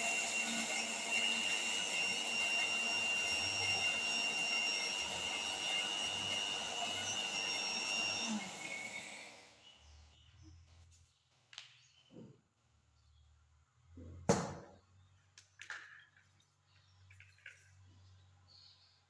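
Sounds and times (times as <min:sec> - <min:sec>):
mixer grinder motor whining: 0:00.0 - 0:09.8.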